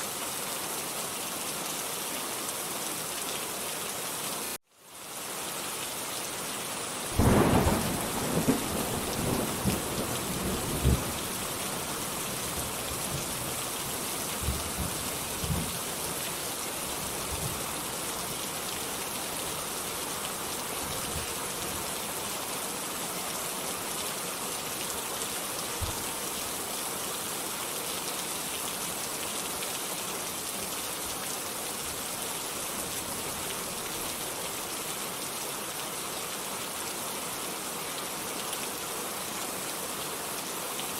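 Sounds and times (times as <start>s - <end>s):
heavy rain hissing: 4.4s - 34.8s
thunder clap and rumble: 7.2s - 11.4s.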